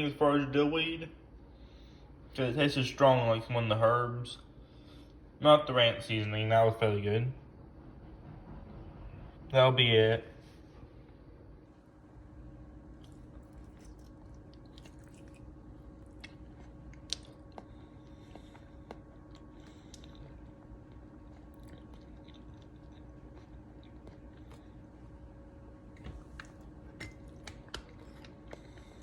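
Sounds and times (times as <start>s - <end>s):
low hum: 6.8s - 29.0s.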